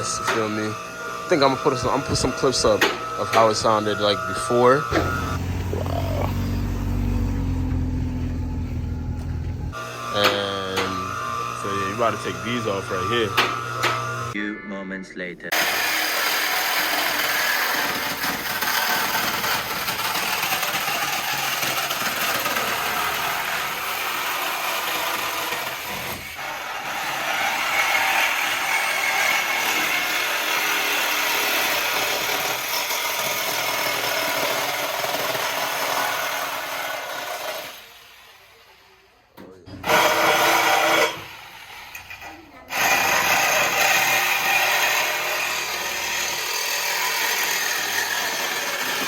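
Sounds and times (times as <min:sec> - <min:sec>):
power saw cutting metal pipe: 0:00.0 - 0:14.4, 0:15.5 - 0:39.0, 0:39.7 - 0:49.0.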